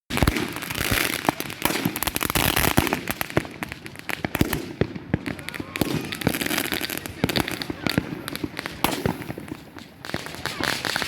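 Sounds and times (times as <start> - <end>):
fireworks bangs and crackling: 0.1 - 11.0.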